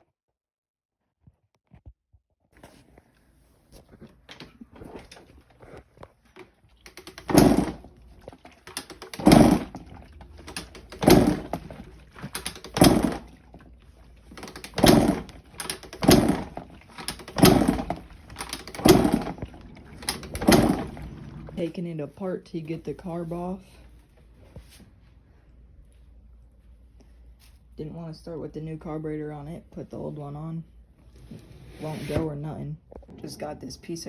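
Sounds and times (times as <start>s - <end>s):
dirt bike kick start attempts: 6.4s - 13.6s, 14.2s - 21.7s.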